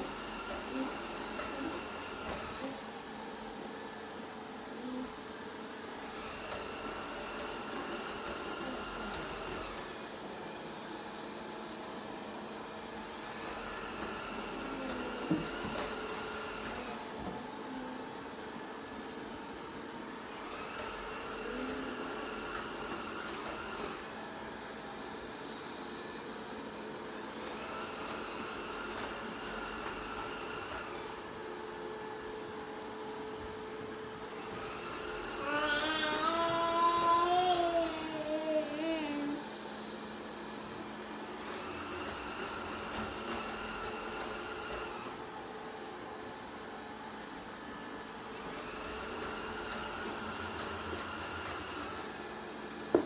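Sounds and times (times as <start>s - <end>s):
robot vacuum cleaner whirring: 0.0s - 53.0s.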